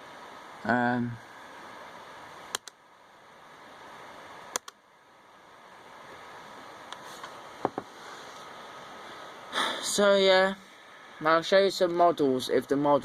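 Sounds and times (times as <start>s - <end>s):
steady low hiss: 0.0s - 13.0s
laptop clicks: 2.5s - 2.8s, 4.5s - 4.8s.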